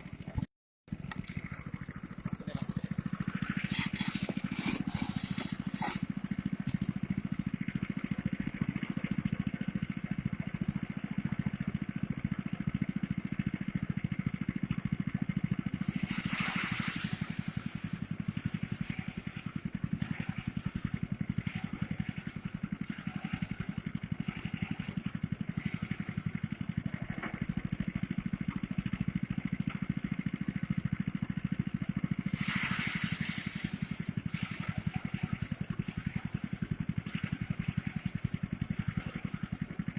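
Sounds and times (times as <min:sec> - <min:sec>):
threshing machine engine running: 0:00.0 - 0:39.9
rushing hiss: 0:15.9 - 0:17.4, 0:32.3 - 0:34.2.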